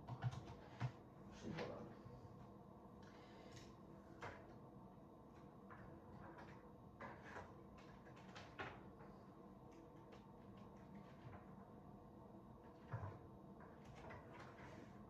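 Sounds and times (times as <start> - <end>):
low steady background hum: 0.0 - 15.0
faint clicks and knocks: 5.3 - 11.7.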